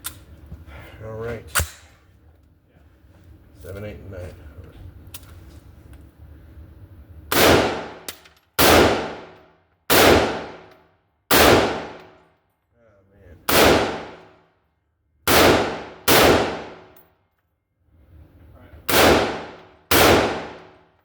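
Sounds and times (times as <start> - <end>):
rifle shots cracking: 7.3 - 10.7, 11.3 - 12.1, 13.5 - 14.2, 15.3 - 17.0, 18.9 - 20.8.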